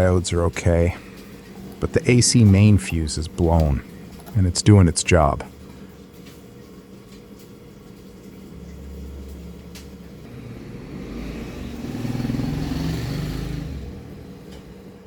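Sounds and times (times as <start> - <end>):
vehicle passing by: 10.2 - 15.0.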